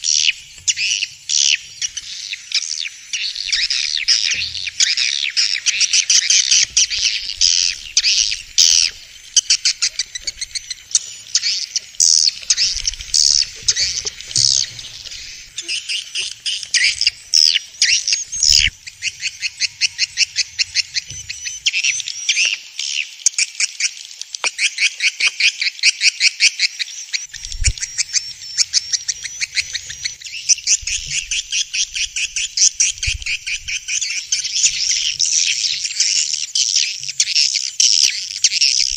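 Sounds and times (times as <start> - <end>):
swiftlets buzzy chirps: 0.0 - 22.0.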